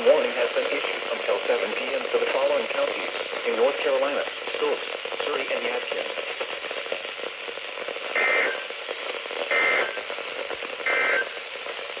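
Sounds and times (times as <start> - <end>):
radio hiss: 0.0 - 12.0
screechy two-tone data bursts: 8.0 - 11.6.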